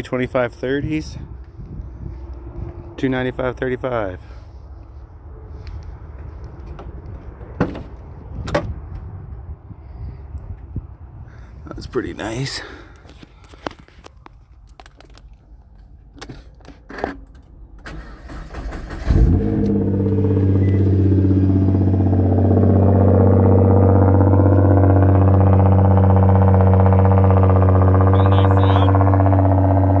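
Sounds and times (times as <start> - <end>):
car engine starting and idling: 16.2 - 30.0.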